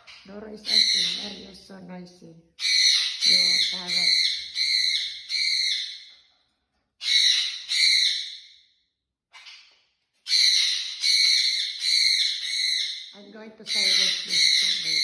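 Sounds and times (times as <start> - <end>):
parrot calling harshly: 0.0 - 1.4, 2.6 - 6.0, 7.0 - 8.4, 10.3 - 13.1, 13.7 - 15.0.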